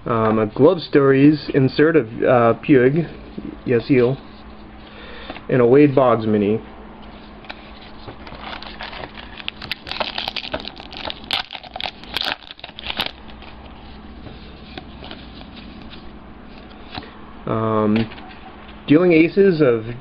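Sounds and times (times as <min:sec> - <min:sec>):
trading cards rustling: 0:07.1 - 0:17.1
plastic wrapper crinkling and tearing: 0:08.2 - 0:13.7.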